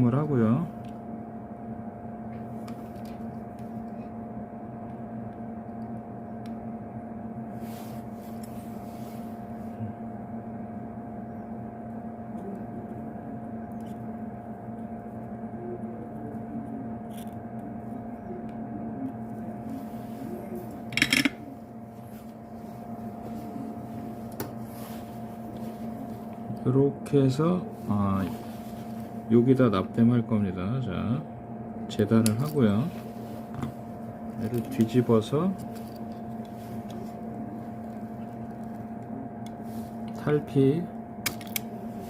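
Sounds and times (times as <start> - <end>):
electrical hum: 0.0 - 42.0.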